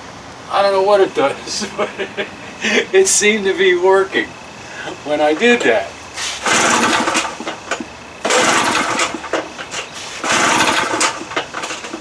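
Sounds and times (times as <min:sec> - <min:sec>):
outboard motor pull-start cranking: 0:05.4 - 0:12.0.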